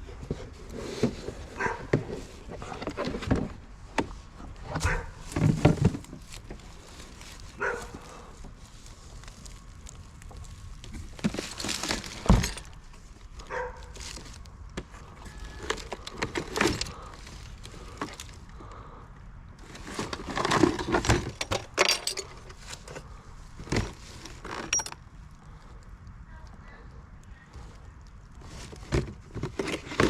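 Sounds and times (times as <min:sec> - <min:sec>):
junk clattering and clinking: 0:11.2 - 0:12.8, 0:19.7 - 0:25.0.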